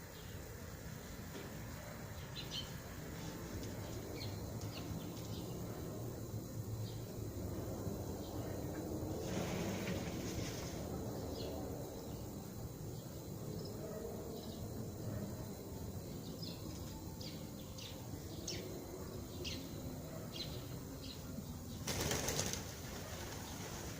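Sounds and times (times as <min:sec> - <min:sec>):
bird chirping: 0:02.2 - 0:05.7.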